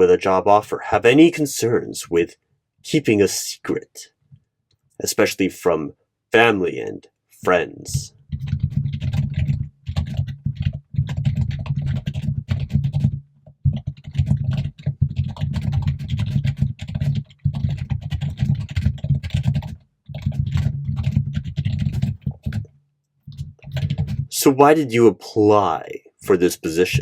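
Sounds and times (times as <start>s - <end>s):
fast typing on computer keyboard: 8.2s - 22.7s, 23.3s - 24.3s.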